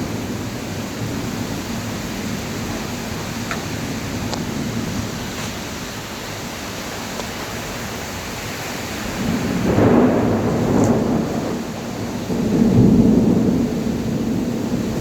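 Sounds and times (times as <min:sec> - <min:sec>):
low rumble of thunder: 0:00.0 - 0:05.3, 0:08.8 - 0:15.0
heavy rain hissing: 0:00.0 - 0:15.0.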